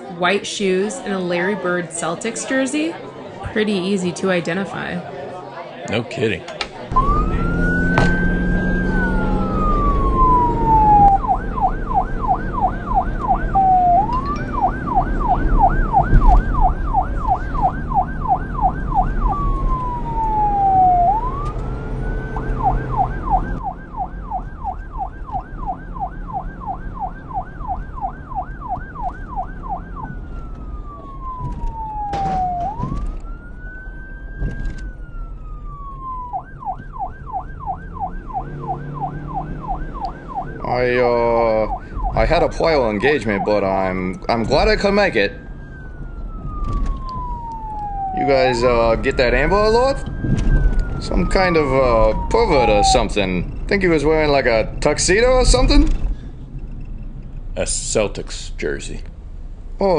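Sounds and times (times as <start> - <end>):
electronic police siren: 6.9 - 56.0.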